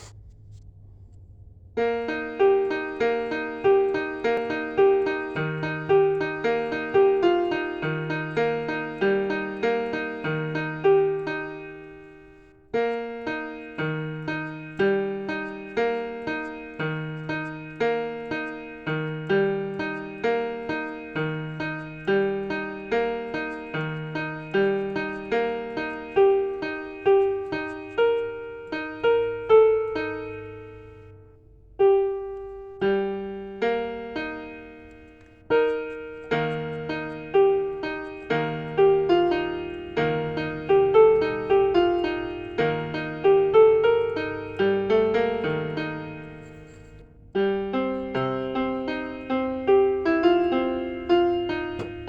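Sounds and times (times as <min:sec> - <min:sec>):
slow piano melody: 0:01.7 - 0:52.0.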